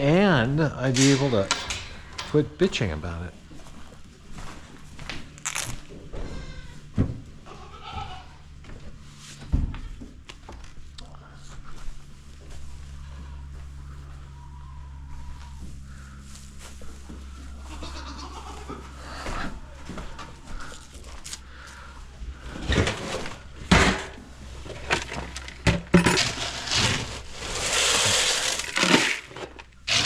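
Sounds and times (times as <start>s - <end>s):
sharp knocks and clatters: 0.9s - 2.8s
goats bleating: 6.1s - 8.6s, 17.4s - 19.6s.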